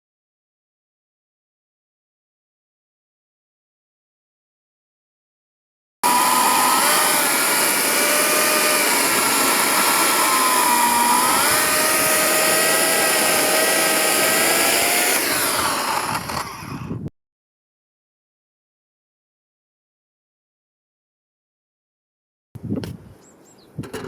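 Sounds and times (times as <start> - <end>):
chainsaw cutting firewood: 6.0 - 17.0.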